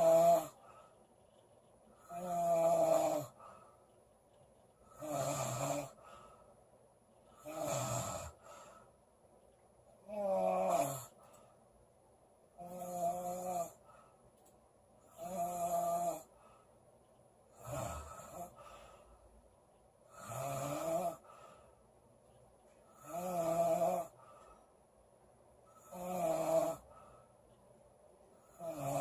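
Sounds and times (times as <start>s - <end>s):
girl snoring: 0.0s - 0.6s, 2.0s - 3.4s, 4.9s - 6.0s, 7.4s - 8.6s, 10.0s - 11.2s, 12.6s - 13.9s, 15.1s - 16.3s, 17.6s - 18.6s, 20.1s - 21.3s, 23.0s - 24.2s, 25.8s - 26.9s, 28.5s - 29.0s.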